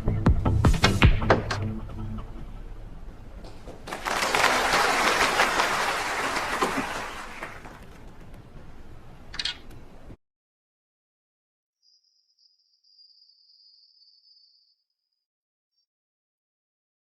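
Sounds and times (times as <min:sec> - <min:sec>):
audience applauding: 0:03.8 - 0:08.6.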